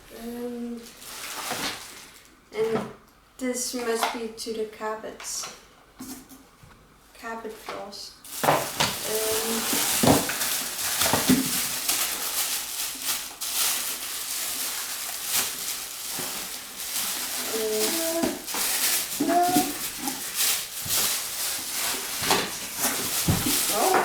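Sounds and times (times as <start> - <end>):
plastic packaging crinkling: 0.8 - 2.4, 8.2 - 24.0.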